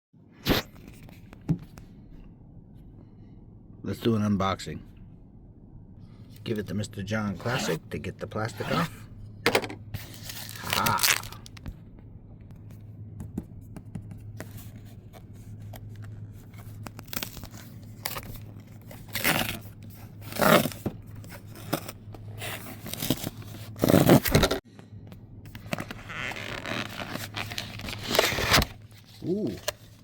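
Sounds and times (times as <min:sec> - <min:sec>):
steady low hum: 0:00.6 - 0:30.0
plastic wrap tearing and crinkling: 0:17.0 - 0:20.6.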